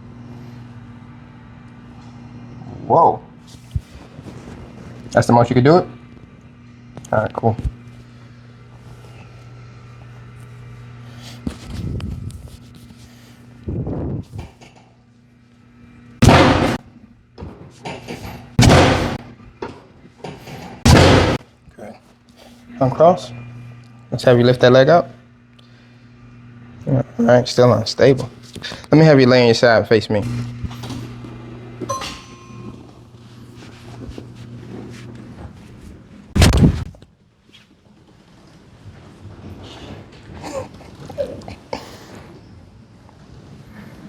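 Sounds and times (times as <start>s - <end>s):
heavy thumps: 16.2s - 16.8s, 18.6s - 19.2s, 20.9s - 21.4s
thud and crack: 16.2s - 16.8s, 18.6s - 19.8s, 20.9s - 21.4s, 36.4s - 37.0s.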